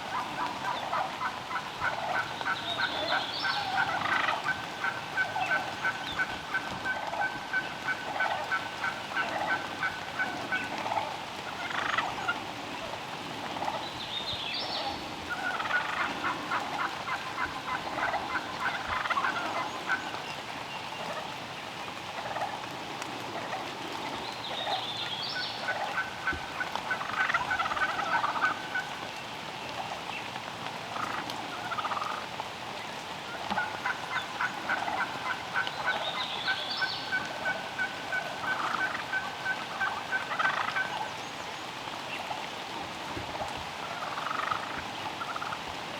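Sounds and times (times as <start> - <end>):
turkeys gobbling and yelping: 0.0 - 45.7.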